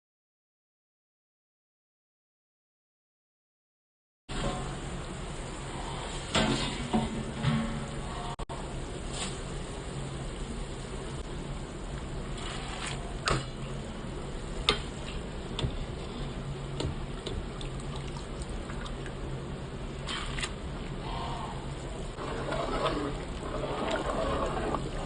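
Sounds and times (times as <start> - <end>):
running water: 16.8 - 21.1, 22.1 - 25.0.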